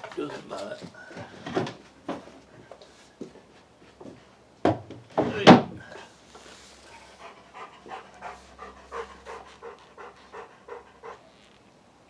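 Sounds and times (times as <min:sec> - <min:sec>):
dog panting: 0:06.8 - 0:11.6.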